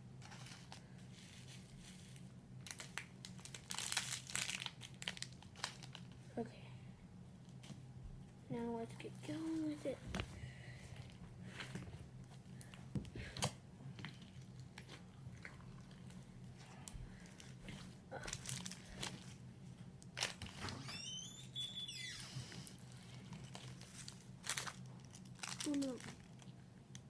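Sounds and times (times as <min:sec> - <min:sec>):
slime squished and crackling: 0:02.6 - 0:06.2, 0:13.4 - 0:19.4, 0:22.6 - 0:27.0.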